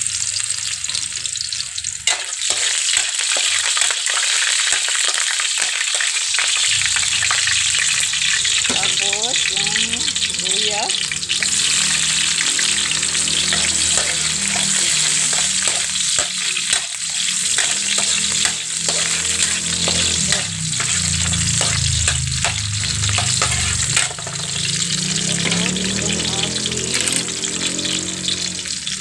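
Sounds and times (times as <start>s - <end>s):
onion sizzling in hot oil: 0.0s - 29.0s
utensil stirring against pan: 5.9s - 29.0s.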